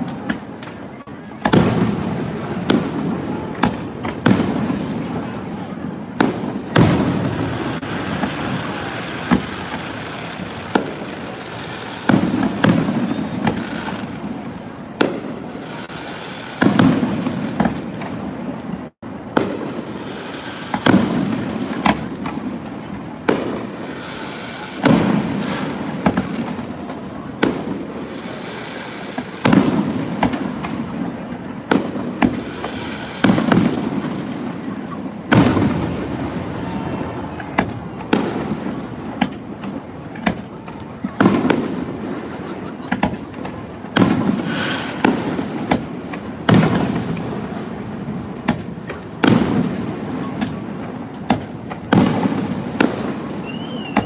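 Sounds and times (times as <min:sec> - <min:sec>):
fireworks crackling: 0:00.0 - 0:54.0.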